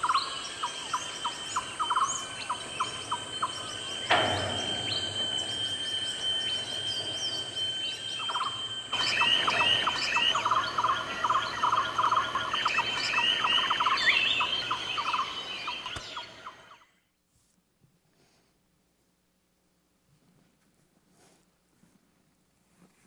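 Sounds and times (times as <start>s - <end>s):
quick repeated bird trills: 0.0s - 16.8s
birds calling and chirping: 0.0s - 16.9s
steady high-pitched tone: 0.0s - 16.9s.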